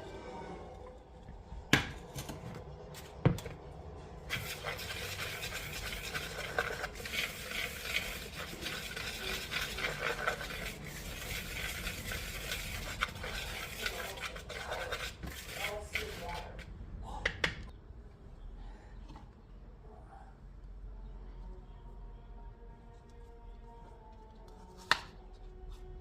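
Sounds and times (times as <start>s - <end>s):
stirring dry ingredients in bowl: 4.3s - 16.7s.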